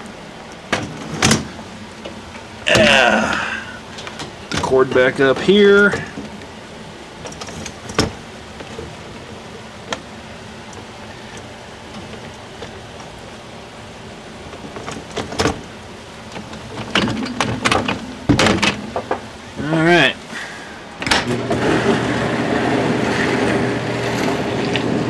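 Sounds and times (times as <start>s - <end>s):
steady low hum: 0.0s - 25.0s
dishwasher rack knocking and clattering: 16.8s - 19.3s.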